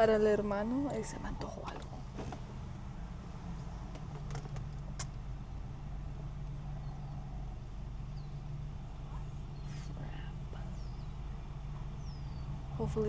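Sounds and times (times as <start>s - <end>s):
car engine idling: 0.0s - 13.0s
light clicks: 3.5s - 5.3s.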